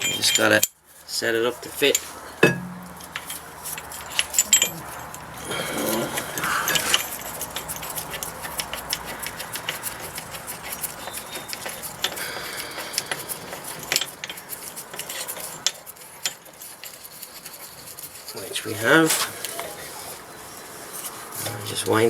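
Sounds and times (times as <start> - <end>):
small metal parts clinking: 0.0 - 0.8, 1.7 - 18.4.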